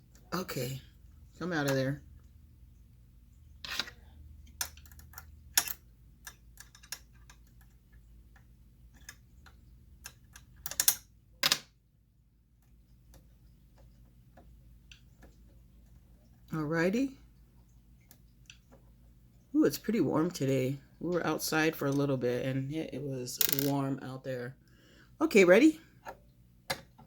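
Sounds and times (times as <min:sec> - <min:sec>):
faint low hum: 0:00.0 - 0:27.0
metal parts and screwdriver clicking: 0:04.6 - 0:07.8, 0:10.0 - 0:11.6.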